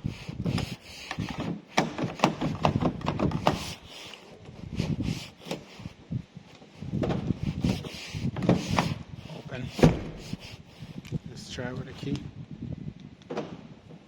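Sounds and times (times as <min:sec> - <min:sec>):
car door lock clicks and knocks: 0:07.0 - 0:07.8, 0:13.2 - 0:13.6.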